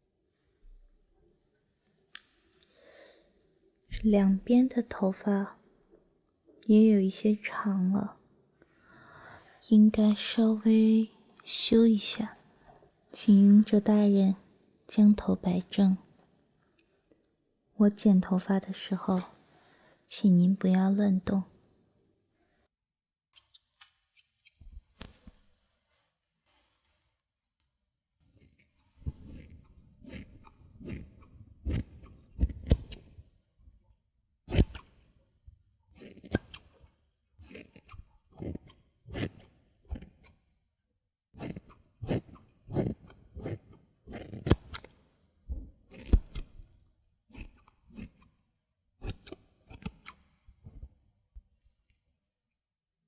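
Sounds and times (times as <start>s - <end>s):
scissors snipping: 28.2s - 33.2s, 34.5s - 35.0s, 35.9s - 40.4s, 41.4s - 45.0s, 45.9s - 46.7s, 47.3s - 48.4s, 49.0s - 50.4s.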